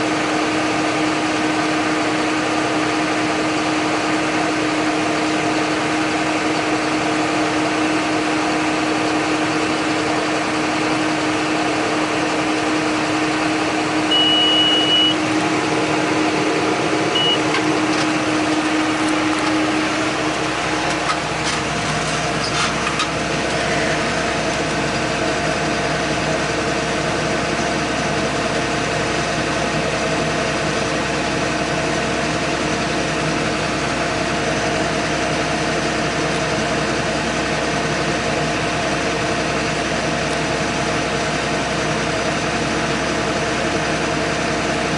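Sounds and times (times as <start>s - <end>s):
tractor diesel engine under load: 0.0s - 44.9s
short high beep: 14.1s - 15.2s, 17.1s - 17.5s.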